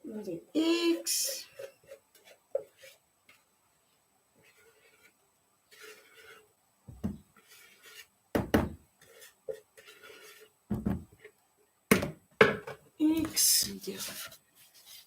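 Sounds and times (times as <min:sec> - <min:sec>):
faint scraping in bowl: 0:01.1 - 0:03.5, 0:04.4 - 0:06.6, 0:07.3 - 0:08.2, 0:09.0 - 0:10.6.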